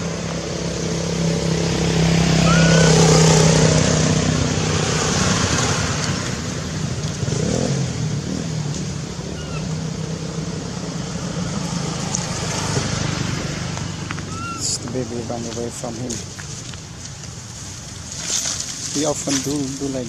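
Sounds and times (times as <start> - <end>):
vehicle engine passing: 0.0 - 20.0
faint high squeaks: 2.4 - 3.0.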